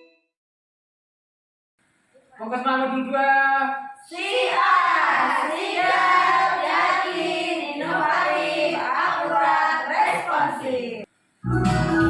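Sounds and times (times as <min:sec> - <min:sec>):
backing music with low beat: 0:11.4 - 0:12.0.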